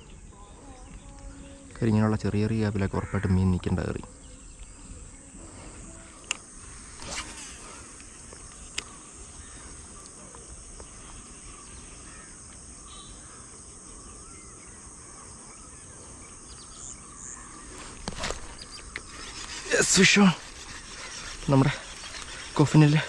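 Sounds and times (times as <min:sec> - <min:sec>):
faint bird chirps: 0:00.0 - 0:23.0
high-pitched insect chorus: 0:00.0 - 0:23.0.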